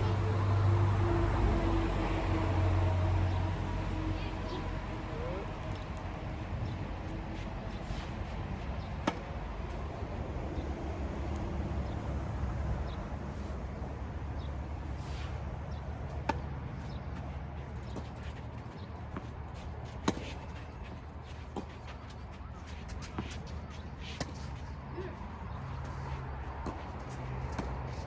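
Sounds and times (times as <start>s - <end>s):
racket hitting tennis ball: 7.7s - 9.9s, 17.9s - 20.6s, 25.6s - 28.0s.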